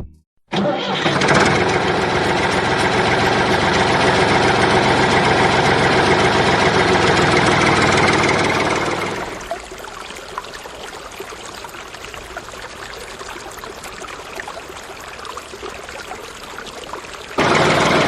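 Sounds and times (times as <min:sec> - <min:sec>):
tractor engine running steadily: 0:00.5 - 0:09.5, 0:17.4 - 0:18.0.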